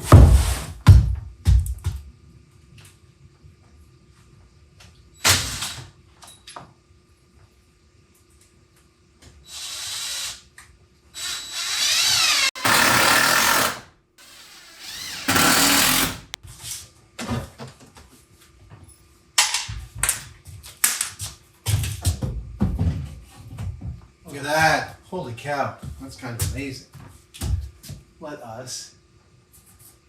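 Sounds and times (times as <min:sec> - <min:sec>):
power drill running: 0:09.5 - 0:10.4, 0:11.2 - 0:16.4.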